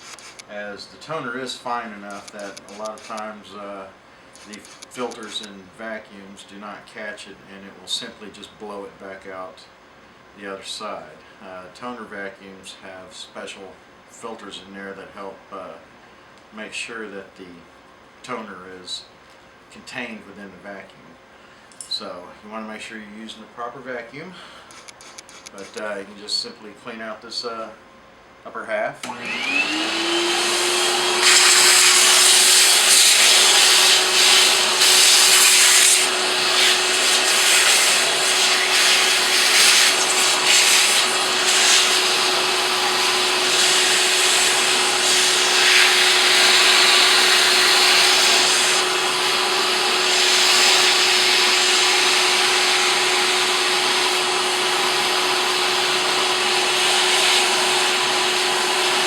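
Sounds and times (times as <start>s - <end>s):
vacuum motor whine: 29.0s - 59.0s.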